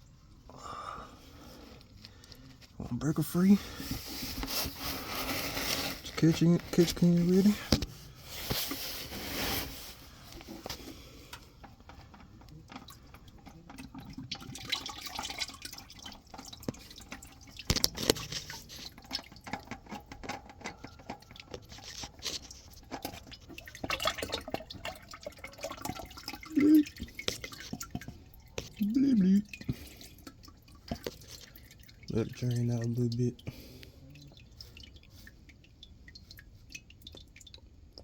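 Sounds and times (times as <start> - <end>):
oil dripping into a can: 0.0 - 38.0.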